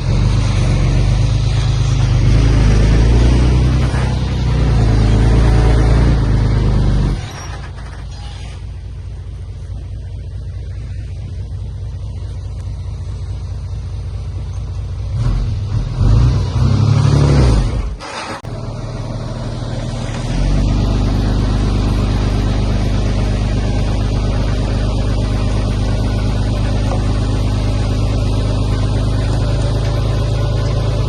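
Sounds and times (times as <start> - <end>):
heavy diesel engine revving: 0.0 - 8.3, 15.0 - 31.0.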